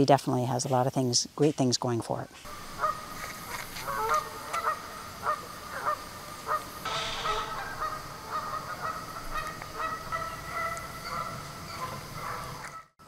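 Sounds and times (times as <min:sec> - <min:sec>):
geese honking: 0:02.6 - 0:12.9.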